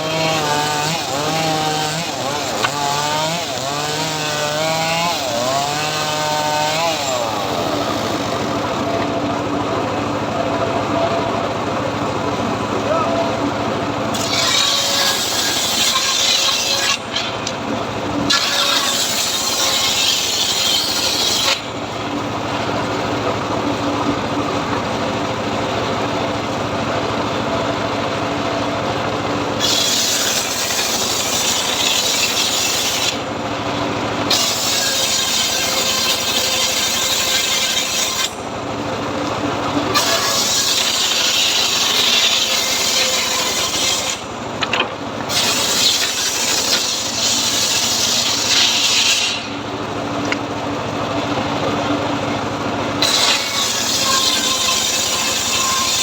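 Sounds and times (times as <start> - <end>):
saw blade rasping through wood: 0.0 - 9.1, 14.1 - 17.6, 18.2 - 21.8, 29.6 - 33.3, 34.2 - 38.4, 39.8 - 44.3, 45.2 - 49.6, 53.0 - 56.0
power saw machine hum: 0.0 - 56.0.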